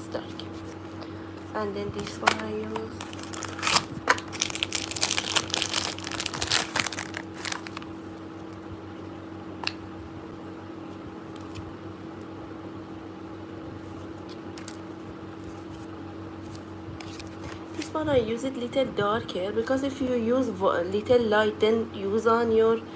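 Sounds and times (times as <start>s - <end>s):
low hum: 0.0s - 12.8s
packaging crinkling: 2.0s - 8.5s, 14.6s - 14.9s.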